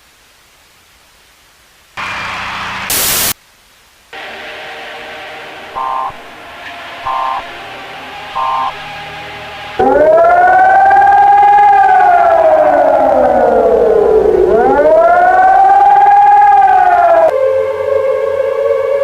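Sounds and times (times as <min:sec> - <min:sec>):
civil defense siren wailing: 0:04.2 - 0:19.0.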